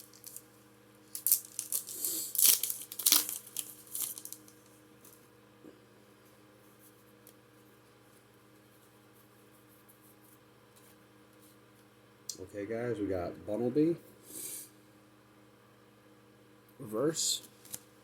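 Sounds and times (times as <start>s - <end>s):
plastic foil wrapper tearing: 0.0s - 0.4s, 1.1s - 5.2s.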